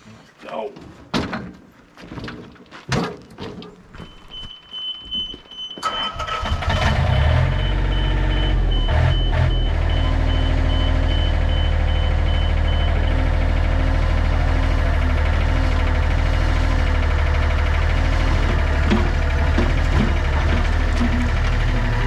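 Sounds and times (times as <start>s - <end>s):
diesel engine starting and idling: 5.8s - 22.0s
knocks: 18.4s - 21.3s.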